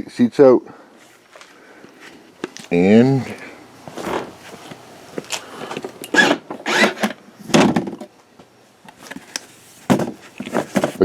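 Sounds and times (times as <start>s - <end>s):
knocks and scrapes of handling: 3.8s - 8.1s, 8.9s - 11.0s.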